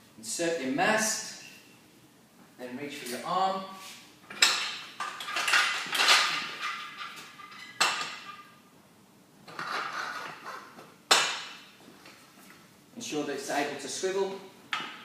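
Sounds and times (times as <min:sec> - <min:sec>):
metal clanking: 0:04.3 - 0:08.6.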